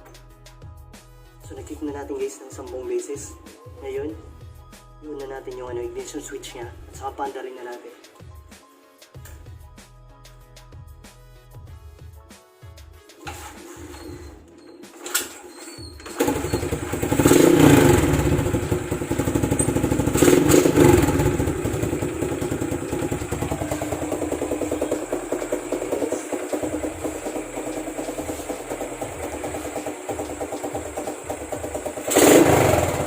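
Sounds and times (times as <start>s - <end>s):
motorcycle engine revving and idling: 13.3s - 33.0s.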